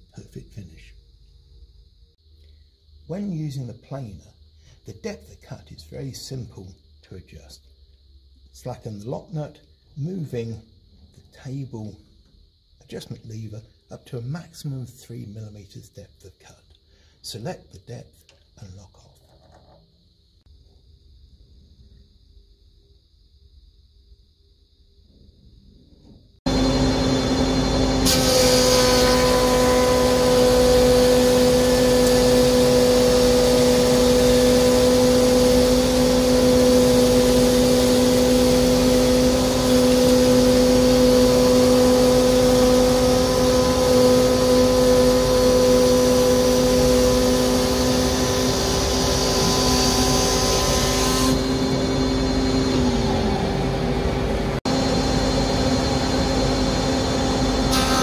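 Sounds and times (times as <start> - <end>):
planer thicknesser humming: 26.5 - 58.0.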